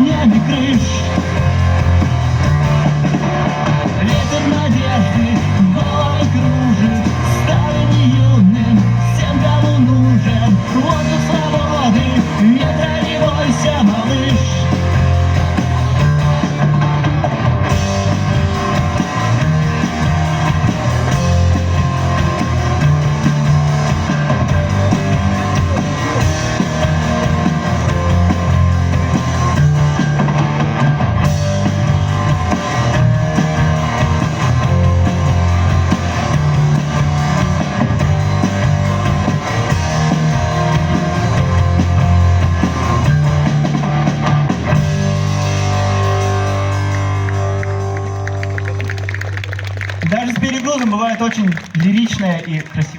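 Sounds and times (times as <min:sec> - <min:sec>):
live rock band playing: 0:00.0 - 0:52.9.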